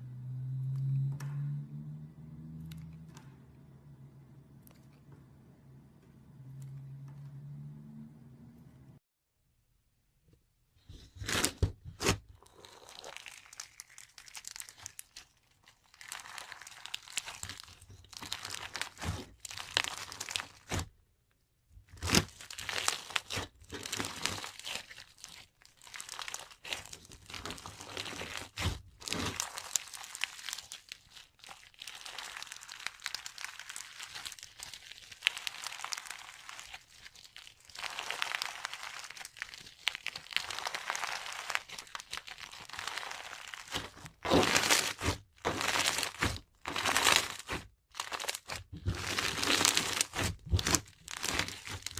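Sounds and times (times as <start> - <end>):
slime crackling and popping: 11.2 - 20.9, 21.8 - 51.9.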